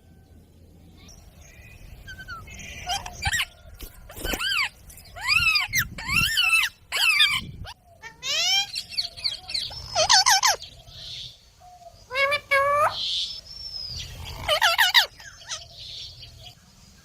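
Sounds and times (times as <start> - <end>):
parrot calling harshly: 4.2 - 9.0, 9.6 - 10.6, 14.2 - 15.6.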